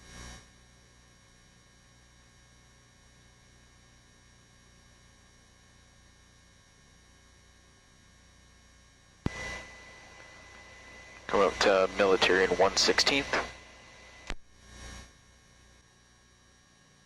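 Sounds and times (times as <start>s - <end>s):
steady high tone: 9.3s - 14.3s
radio transmission click: 9.3s - 14.4s
radio hiss: 9.3s - 14.9s
radio line hum: 9.3s - 15.8s.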